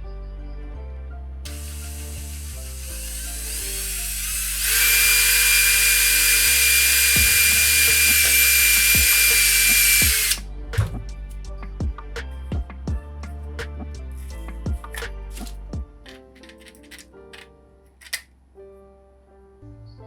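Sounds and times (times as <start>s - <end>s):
background music: 0.0s - 20.0s
power tool whining: 1.5s - 10.4s.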